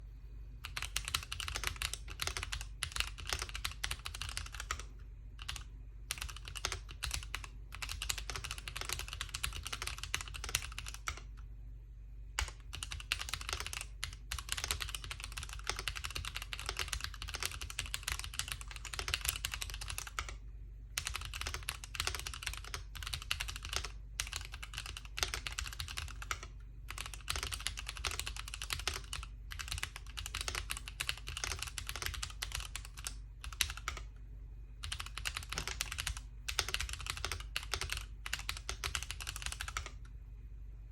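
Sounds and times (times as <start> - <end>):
typing on a mechanical keyboard: 0.6 - 11.4, 12.4 - 20.4, 21.0 - 34.1, 34.8 - 40.0.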